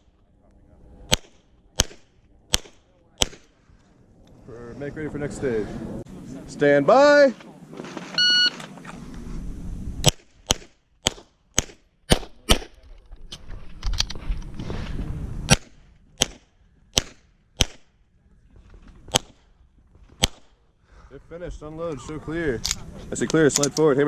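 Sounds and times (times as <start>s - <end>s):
pistol shots: 1.1s - 3.5s, 10.0s - 12.7s, 15.5s - 17.9s, 19.1s - 19.5s, 20.2s - 20.6s.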